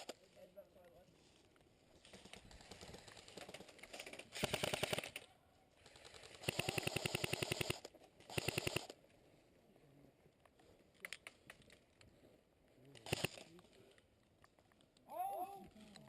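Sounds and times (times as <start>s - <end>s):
airsoft gun firing bursts: 4.3s - 5.2s, 6.0s - 9.0s.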